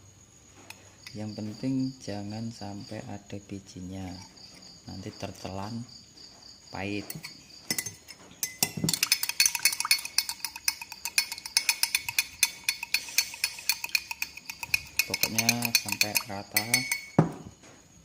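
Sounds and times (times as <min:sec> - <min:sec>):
metal spoon clinking in a glass: 0:07.0 - 0:17.3.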